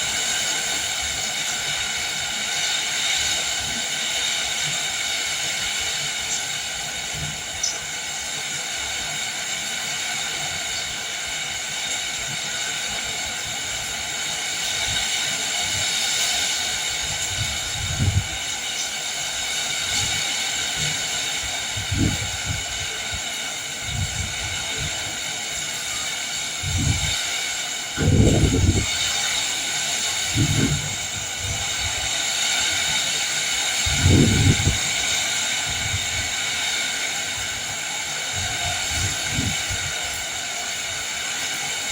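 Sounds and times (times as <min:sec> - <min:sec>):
rain hissing: 0:00.0 - 0:41.9
wind: 0:00.0 - 0:41.9
low thunder rumbles: 0:21.7 - 0:22.7, 0:28.0 - 0:29.1, 0:30.2 - 0:32.0, 0:33.8 - 0:35.0.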